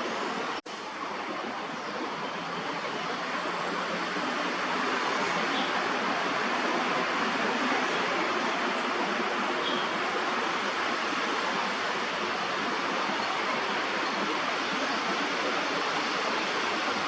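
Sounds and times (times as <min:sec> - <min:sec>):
strong wind in trees: 0:00.0 - 0:17.0.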